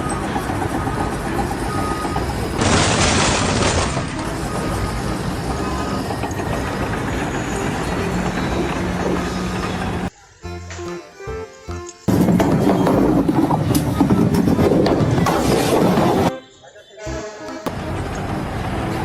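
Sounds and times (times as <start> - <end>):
heavy machinery rumble: 0.0 - 10.1, 17.7 - 19.0.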